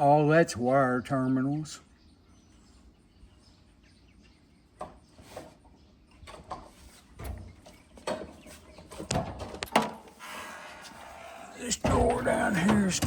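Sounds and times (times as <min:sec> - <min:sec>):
toolbox drawers clicking and knocking: 0:11.8 - 0:13.0.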